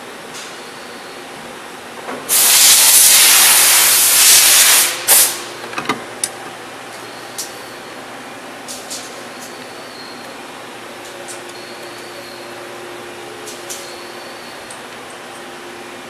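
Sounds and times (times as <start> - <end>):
compressed air hissing: 2.3 - 5.5.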